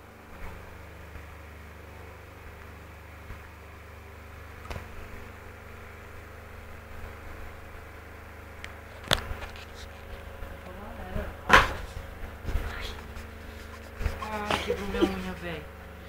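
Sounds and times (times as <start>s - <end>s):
electric fan humming: 0.0s - 16.0s.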